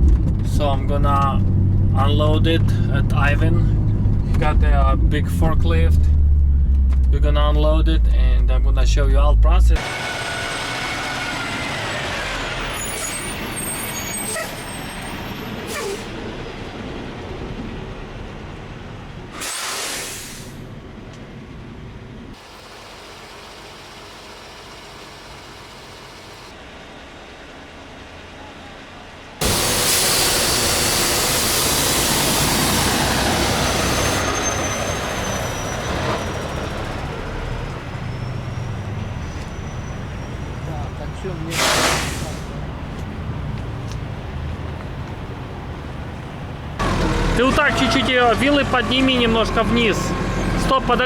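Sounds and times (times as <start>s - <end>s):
truck engine running: 0.0s - 19.4s, 20.7s - 51.0s
air brake hiss: 19.3s - 20.7s, 29.4s - 32.6s, 41.5s - 42.6s.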